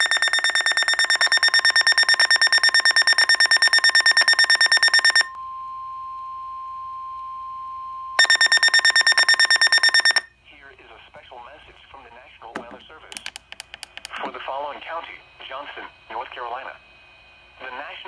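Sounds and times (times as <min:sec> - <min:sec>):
steady single-pitched alarm tone: 0:00.0 - 0:05.4, 0:08.2 - 0:10.3
broadcast voice: 0:10.5 - 0:13.4, 0:14.0 - 0:16.8, 0:17.6 - 0:18.0.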